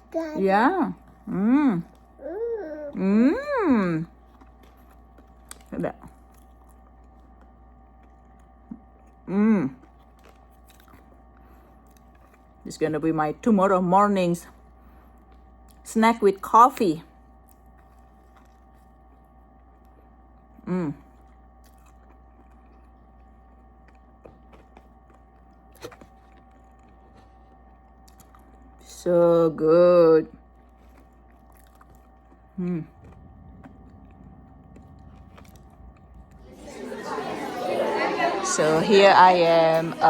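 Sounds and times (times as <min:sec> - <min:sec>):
faint steady hum: 0:00.0 - 0:40.0
person humming: 0:01.3 - 0:03.8.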